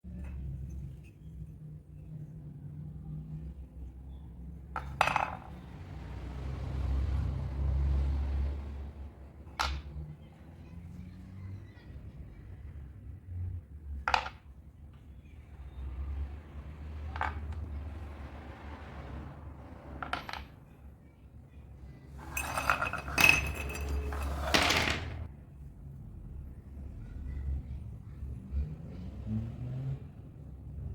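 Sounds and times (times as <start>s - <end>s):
hard objects clinking: 22.1s - 25.3s.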